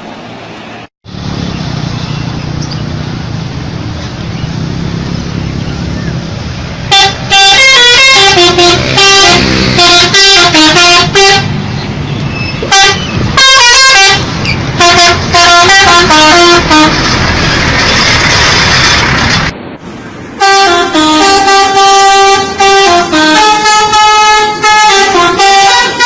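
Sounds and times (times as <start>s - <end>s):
bus engine rumble: 0.0s - 26.0s
air horns playing a tune: 6.9s - 11.6s, 12.6s - 17.2s, 20.4s - 26.0s.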